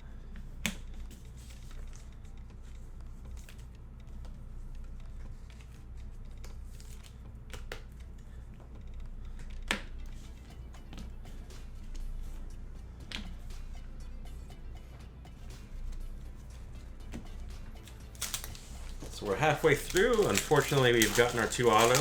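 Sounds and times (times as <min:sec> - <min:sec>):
low steady hum: 0:00.0 - 0:22.0
cards being handled: 0:00.4 - 0:04.3, 0:05.0 - 0:08.7, 0:17.1 - 0:22.0.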